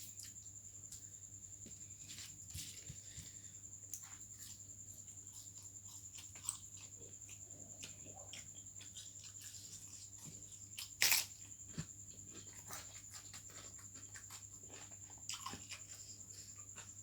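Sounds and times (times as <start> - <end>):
wet chewing: 5.3 - 16.9.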